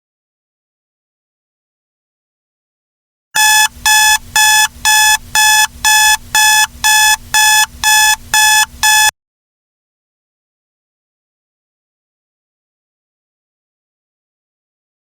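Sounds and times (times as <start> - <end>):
electronic alarm beeps: 3.4 - 9.1.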